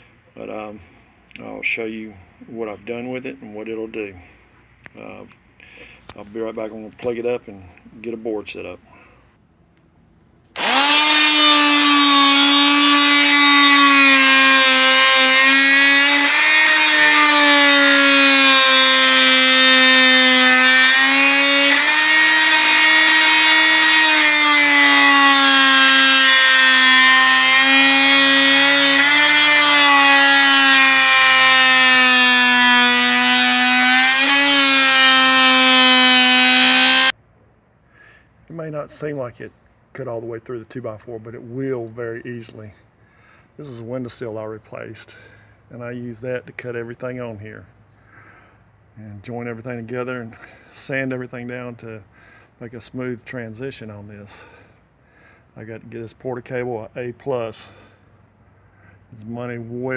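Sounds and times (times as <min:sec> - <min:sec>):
multi-tool cutting wood: 0:10.6 - 0:37.2.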